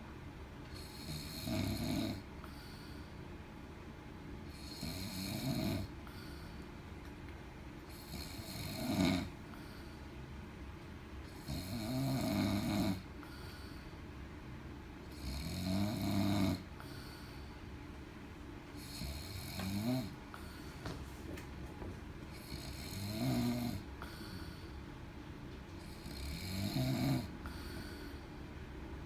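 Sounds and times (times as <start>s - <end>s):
man snoring loudly: 0.8s - 2.2s, 4.5s - 5.9s, 7.9s - 9.3s, 11.4s - 13.0s, 15.1s - 16.7s, 18.8s - 20.1s, 22.4s - 24.2s, 26.0s - 27.3s.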